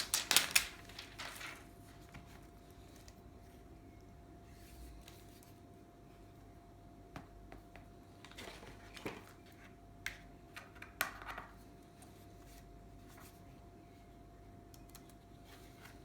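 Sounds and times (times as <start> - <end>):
packaging rustling: 0.0 - 1.7
faint steady hum: 0.0 - 16.0.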